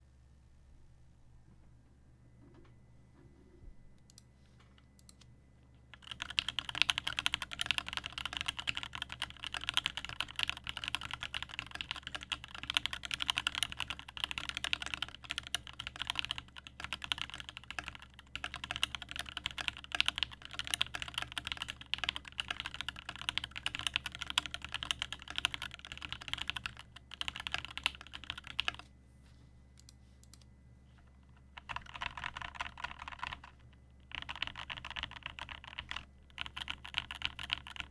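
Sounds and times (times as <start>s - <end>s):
mechanical keyboard typing: 6.0s - 28.8s, 31.5s - 37.9s.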